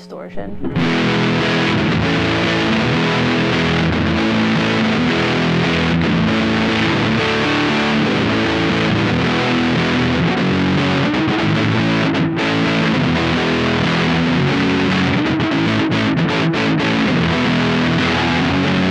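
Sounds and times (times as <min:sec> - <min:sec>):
distorted electric guitar chords: 0:00.0 - 0:18.9.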